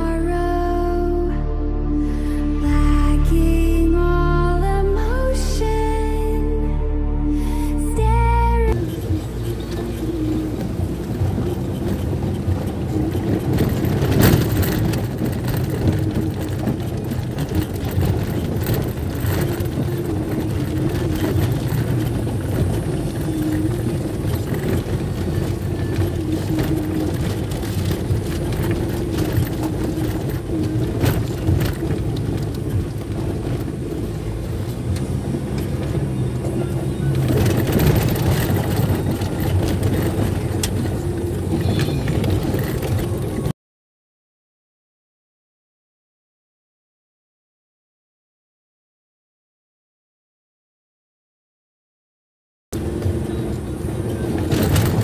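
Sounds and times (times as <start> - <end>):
vehicle engine running: 0.0 - 43.5, 52.7 - 55.0
knocks and rattles: 8.7 - 43.5, 52.8 - 55.0.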